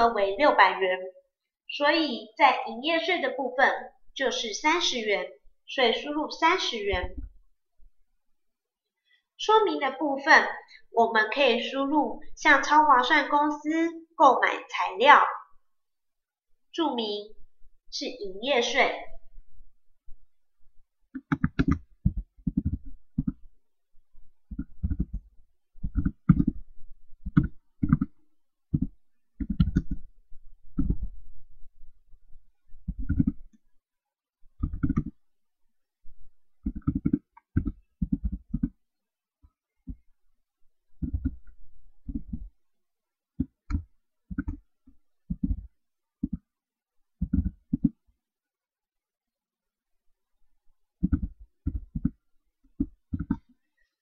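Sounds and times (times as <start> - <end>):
computer keyboard typing: 21.2 - 23.4, 27.2 - 30.0, 34.6 - 35.1
typing on computer keyboard: 21.2 - 23.4, 34.6 - 35.1.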